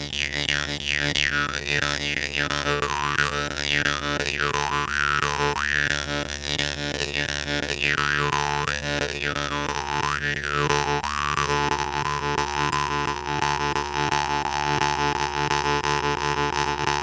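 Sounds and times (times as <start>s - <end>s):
jaw harp drone: 0.0s - 17.0s.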